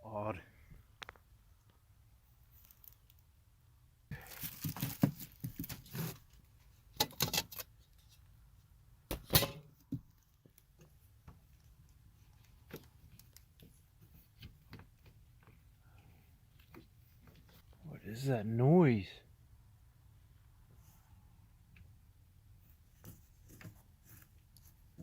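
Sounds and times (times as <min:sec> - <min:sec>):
handling clattering and rustling: 0:04.1 - 0:08.2.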